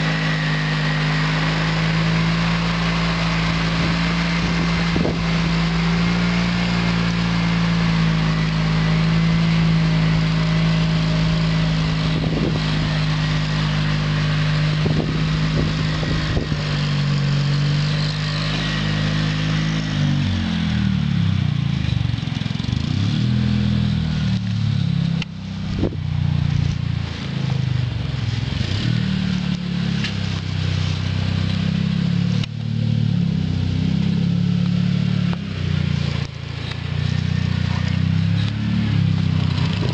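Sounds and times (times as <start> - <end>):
tractor engine running: 0.0 - 39.9.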